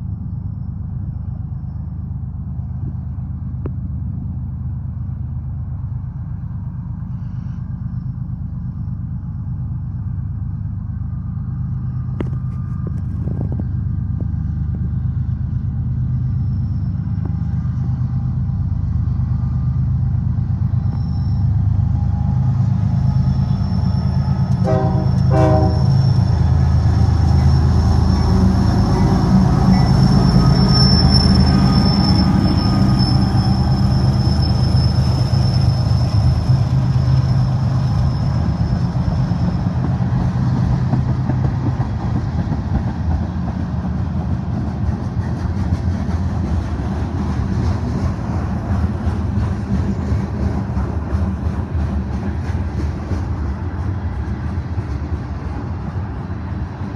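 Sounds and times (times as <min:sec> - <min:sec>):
freight cars rumbling and clattering: 0:00.0 - 0:56.9
locomotive engine drone: 0:00.0 - 0:56.9
thin high whine: 0:20.6 - 0:39.8
train horn toots: 0:23.3 - 0:26.6.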